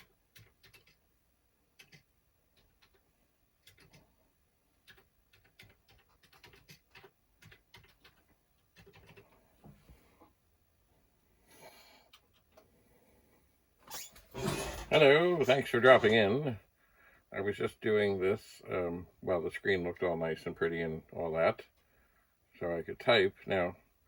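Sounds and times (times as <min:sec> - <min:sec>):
keyboard typing clicks: 0:01.8 - 0:03.0, 0:03.6 - 0:04.0.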